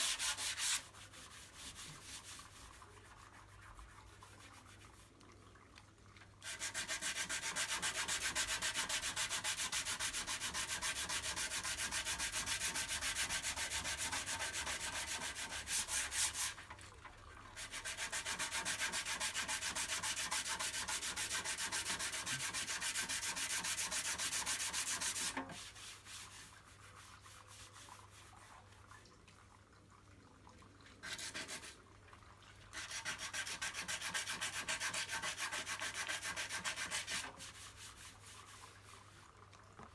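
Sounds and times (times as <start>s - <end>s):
sanding body filler: 0.0s - 2.2s, 6.6s - 16.5s, 17.6s - 26.4s, 32.8s - 38.2s.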